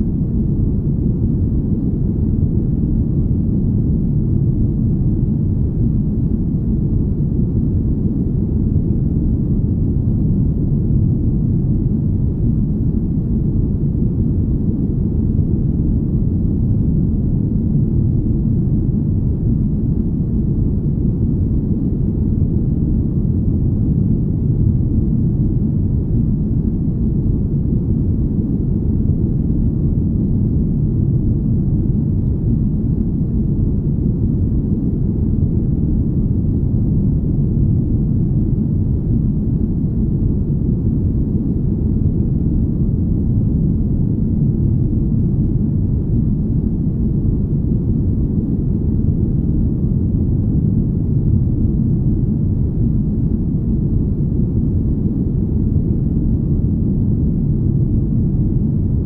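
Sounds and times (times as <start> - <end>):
deep steady rumble: 0.0 - 59.0.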